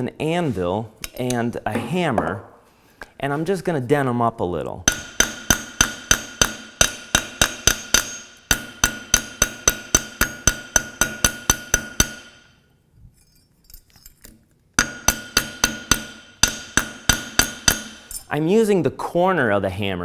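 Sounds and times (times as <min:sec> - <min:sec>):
hammer striking steel on anvil: 0:04.9 - 0:12.5, 0:14.8 - 0:18.3.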